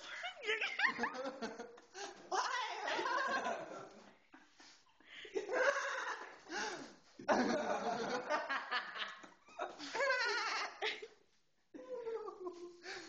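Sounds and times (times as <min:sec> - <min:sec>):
laughter: 0:00.6 - 0:02.0, 0:02.7 - 0:11.2.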